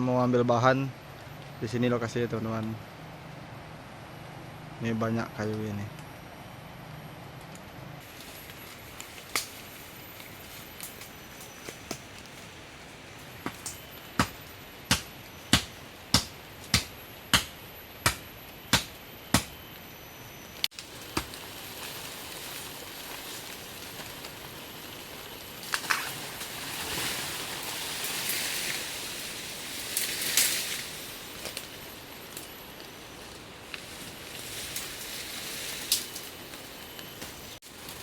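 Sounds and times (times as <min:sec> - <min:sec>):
rustling hiss: 0:08.0 - 0:18.7, 0:20.5 - 0:38.0
blade chopping wood: 0:14.2 - 0:19.6.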